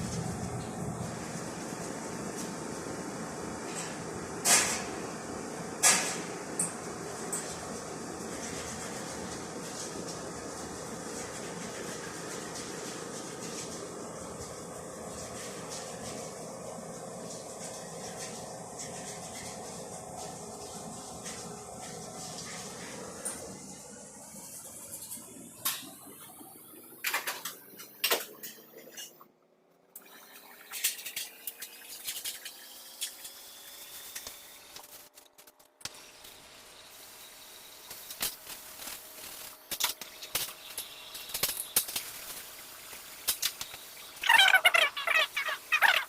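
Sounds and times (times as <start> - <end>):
water running into a container: 30.0 - 33.9.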